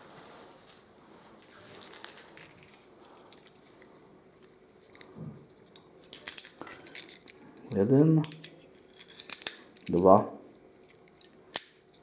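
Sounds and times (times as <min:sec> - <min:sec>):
pistol magazine clicks and rustling: 0:08.2 - 0:10.0, 0:10.9 - 0:11.9.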